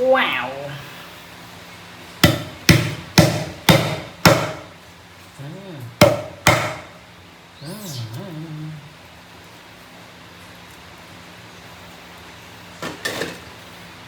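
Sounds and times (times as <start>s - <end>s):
cleaver chopping on cutting board: 2.2s - 4.7s, 6.0s - 6.9s.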